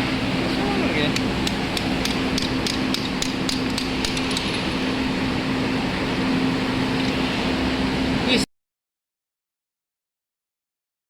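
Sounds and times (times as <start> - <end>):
fast engine knocking tick: 1.4 - 4.4.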